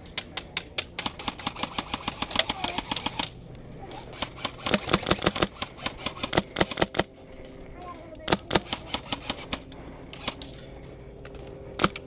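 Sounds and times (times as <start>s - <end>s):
airsoft guns firing: 0.0s - 7.6s, 8.2s - 12.0s.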